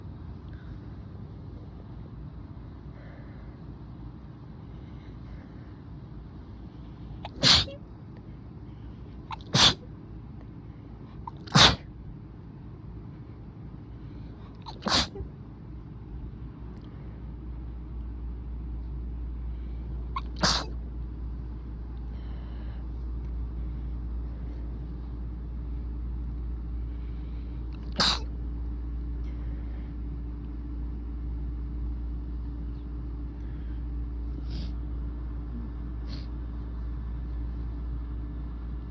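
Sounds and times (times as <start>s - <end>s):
steady low hum: 0.0s - 38.9s
person sneezing: 7.2s - 7.8s, 9.3s - 9.9s, 11.3s - 11.9s, 14.5s - 15.3s, 20.2s - 20.8s, 27.8s - 28.3s.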